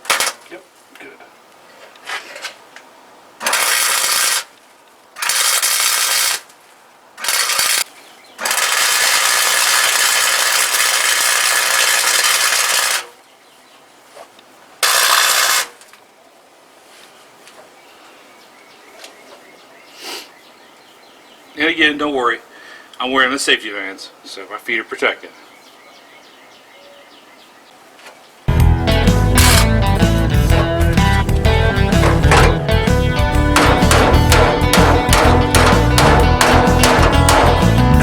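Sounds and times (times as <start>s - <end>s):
welding arc crackling: 3.4s - 4.5s, 5.2s - 6.5s, 7.2s - 13.1s, 14.8s - 15.8s, 29.3s - 38.0s.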